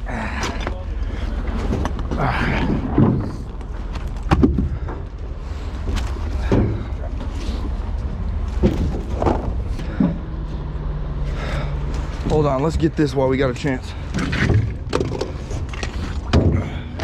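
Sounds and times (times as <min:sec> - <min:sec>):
heavy equipment engine rumble: 0:00.0 - 0:17.0
metal knocks and clanks: 0:08.5 - 0:10.5.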